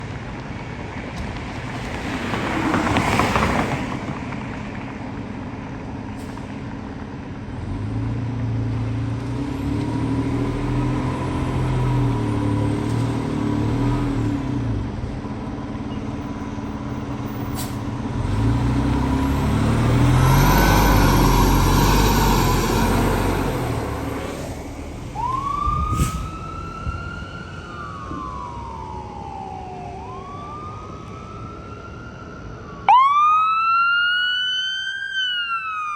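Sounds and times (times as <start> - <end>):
diesel engine revving: 7.5 - 27.6
electronic siren wailing: 25.2 - 31.5, 32.8 - 35.9.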